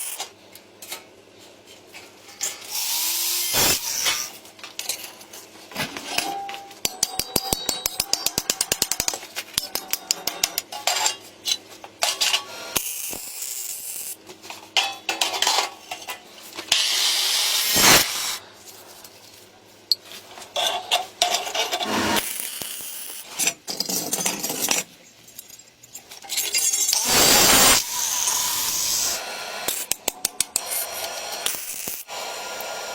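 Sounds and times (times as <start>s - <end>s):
tools clinking and scraping metal: 4.1s - 12.5s, 14.3s - 16.8s, 19.9s - 21.9s, 23.2s - 27.0s
short bursts of hissing: 17.1s - 18.4s.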